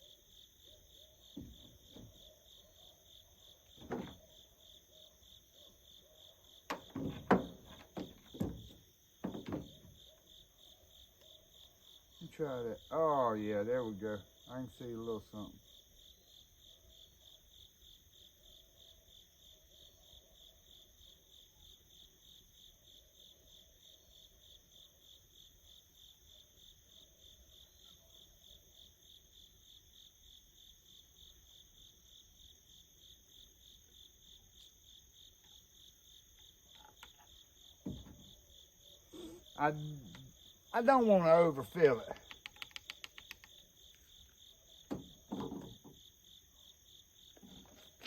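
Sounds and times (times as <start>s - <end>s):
faint crickets trilling: 0.0s - 48.0s
short knock: 6.7s - 10.0s.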